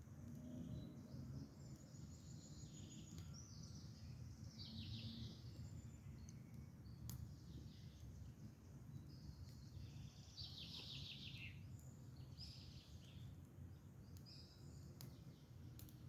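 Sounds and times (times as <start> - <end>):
faint birdsong: 0.2 - 16.0
wood fire crackle: 5.2 - 16.0.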